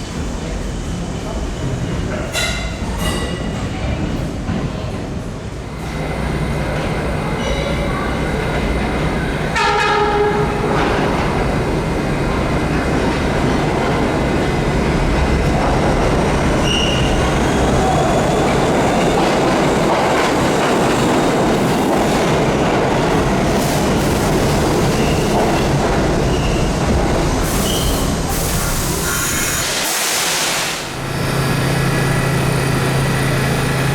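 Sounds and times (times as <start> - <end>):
subway train running on rails: 0.0 - 33.9
train horn: 9.5 - 10.8.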